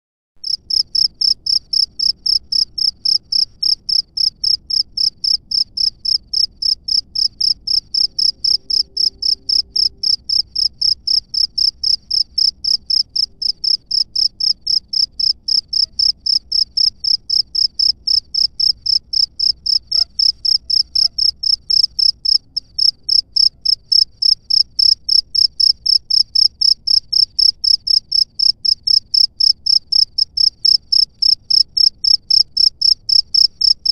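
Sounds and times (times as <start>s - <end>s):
cricket chirping: 0.4s - 33.9s.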